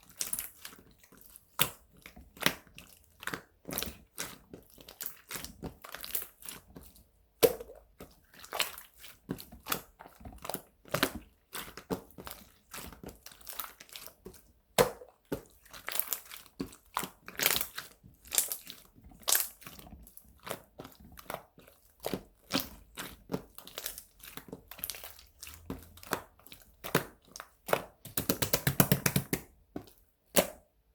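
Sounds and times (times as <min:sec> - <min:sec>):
slime crackling and squelching: 0:00.0 - 0:30.7.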